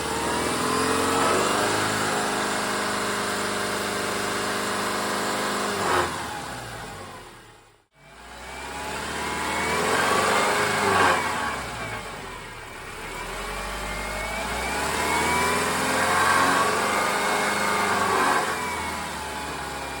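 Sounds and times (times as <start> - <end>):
car engine revving: 0.0 - 20.0.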